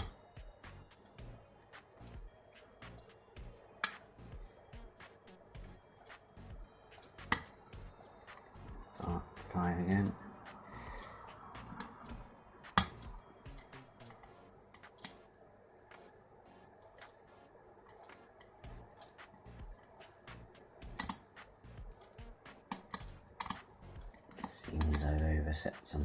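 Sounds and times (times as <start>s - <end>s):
lock pick clicking pins: 0.0s - 0.2s, 2.0s - 4.8s, 6.9s - 8.5s, 11.0s - 14.2s, 20.9s - 21.4s, 22.0s - 25.2s.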